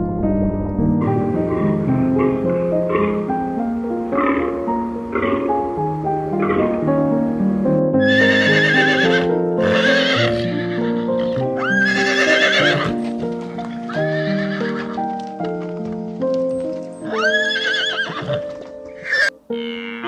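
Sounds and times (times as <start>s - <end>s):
background music: 0.0s - 20.0s
horses neighing: 1.5s - 3.2s, 4.1s - 5.7s, 6.4s - 6.8s, 8.0s - 15.1s, 16.9s - 20.0s.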